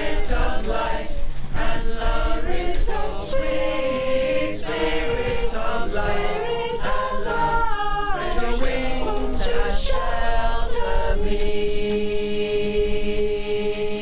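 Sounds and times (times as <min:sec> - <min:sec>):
choir singing unaccompanied: 0:00.0 - 0:14.0.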